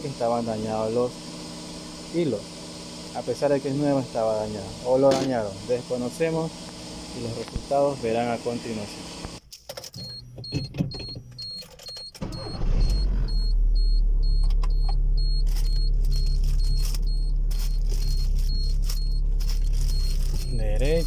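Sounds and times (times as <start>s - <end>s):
car engine low rumble: 0.0s - 9.4s, 10.1s - 21.0s
car warning chime beeping: 10.0s - 21.0s.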